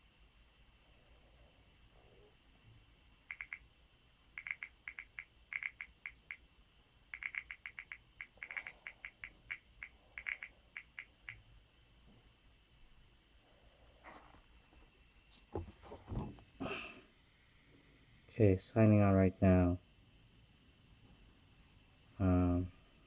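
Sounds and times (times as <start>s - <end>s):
phone keyboard key clicks: 7.2s - 9.6s.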